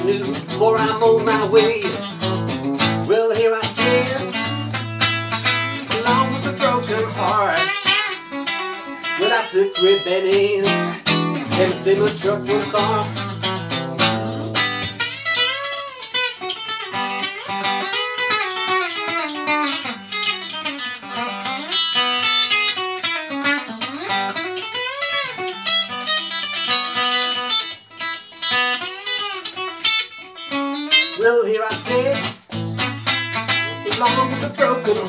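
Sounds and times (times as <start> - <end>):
backing accompaniment: 0.0 - 15.1
electric guitar lead with bent notes: 0.0 - 35.0.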